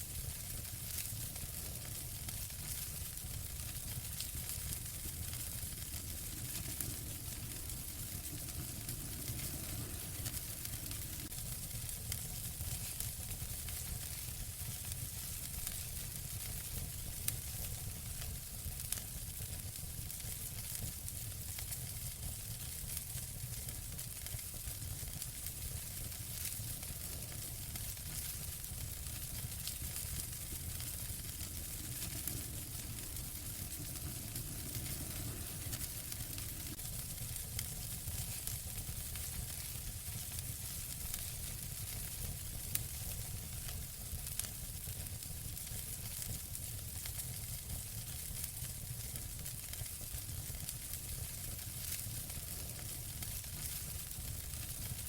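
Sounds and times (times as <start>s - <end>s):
wood fire crackling and hissing: 0.0s - 55.0s
fire pops: 0.4s - 17.8s, 22.6s - 44.6s.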